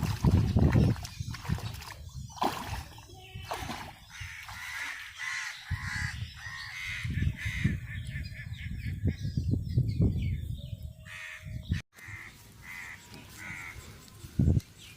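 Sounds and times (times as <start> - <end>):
crows cawing: 12.0 - 13.8.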